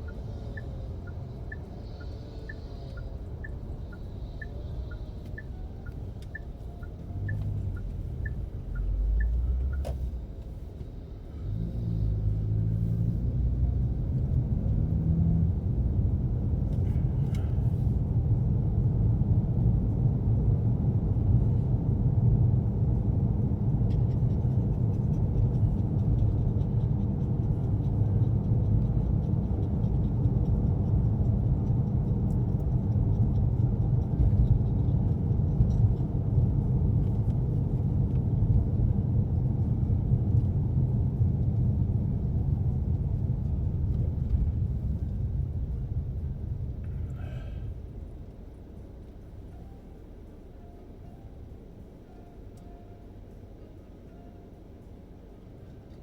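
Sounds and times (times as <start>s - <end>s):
car engine accelerating: 0.0s - 52.0s
road rumble: 0.0s - 56.0s
turn signal ticking: 0.0s - 56.0s.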